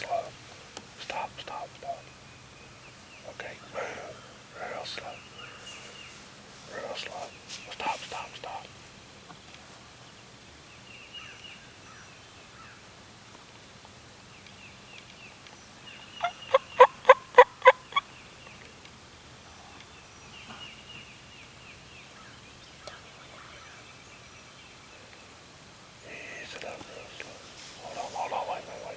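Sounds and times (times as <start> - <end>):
faint songbird chirps: 0.0 - 28.9
turkey gobbling: 16.2 - 18.1.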